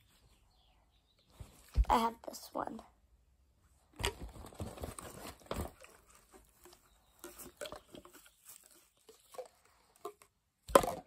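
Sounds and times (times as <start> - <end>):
glass bottles clicking and knocking: 5.8 - 11.0.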